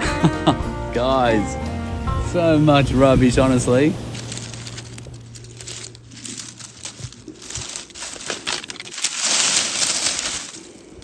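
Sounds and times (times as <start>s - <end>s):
crinkling crackling rustle: 3.3s - 11.0s.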